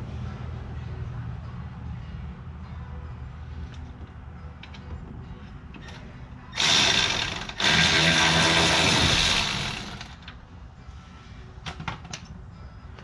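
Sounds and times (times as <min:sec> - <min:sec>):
power wrench spinning bolts: 0:06.5 - 0:10.3.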